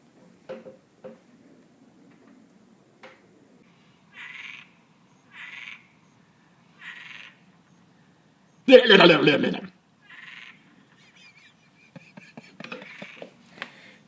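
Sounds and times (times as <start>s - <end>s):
harsh animal calls: 4.1s - 6.0s, 6.7s - 7.5s, 8.7s - 11.4s, 12.7s - 13.4s.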